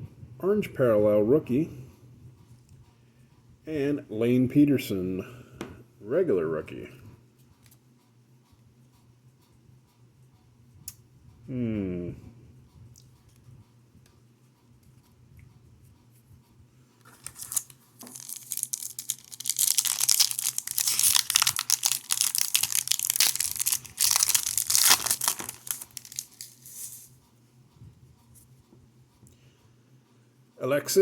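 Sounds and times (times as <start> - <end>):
plastic wrapper tearing and crinkling: 17.0 - 27.1.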